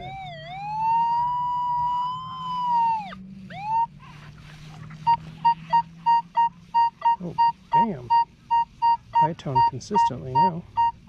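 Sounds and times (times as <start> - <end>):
metal detector wavering alert tone: 5.0 - 11.0
metal detector short beeps: 5.1 - 11.0.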